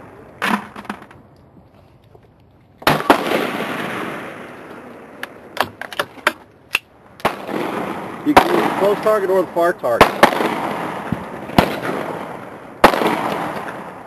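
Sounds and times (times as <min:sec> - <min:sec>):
rifle shots with echo: 0:02.8 - 0:05.6, 0:07.2 - 0:14.0.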